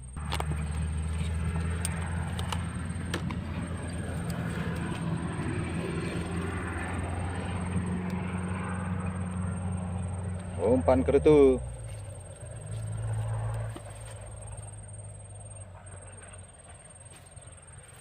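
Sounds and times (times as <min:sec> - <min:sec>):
engine humming: 0:00.0 - 0:18.0.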